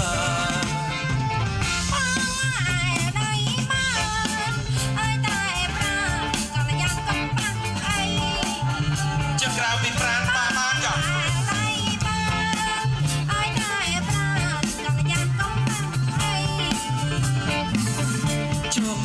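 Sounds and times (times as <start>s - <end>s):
person singing ornamented melody: 0.0s - 0.9s
band with bass and drums: 0.0s - 19.0s.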